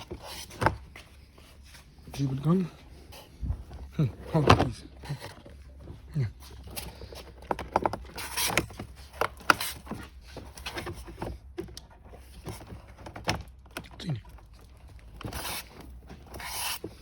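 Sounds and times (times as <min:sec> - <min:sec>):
plastic parts clicking and knocking: 0:03.7 - 0:17.0.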